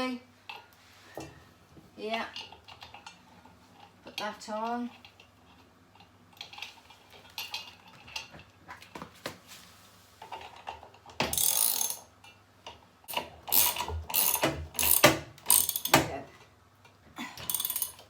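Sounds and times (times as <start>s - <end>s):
ratchet wrench clicking: 11.3s - 12.1s, 13.1s - 16.0s, 17.4s - 18.0s.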